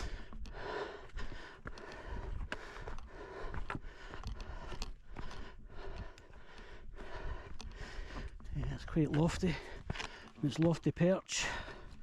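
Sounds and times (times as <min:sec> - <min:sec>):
hiking boots scraping on rock: 0:07.1 - 0:12.0.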